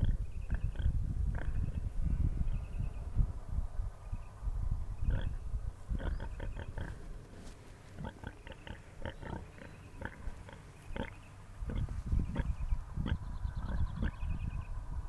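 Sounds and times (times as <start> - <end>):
pigs snoring: 6.0 - 7.0, 8.0 - 13.2.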